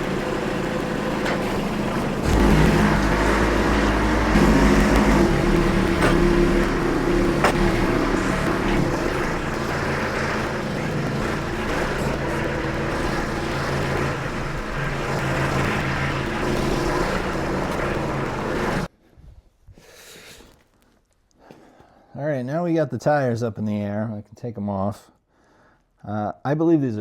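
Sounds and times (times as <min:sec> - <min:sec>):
tractor diesel engine running: 0:00.0 - 0:18.9.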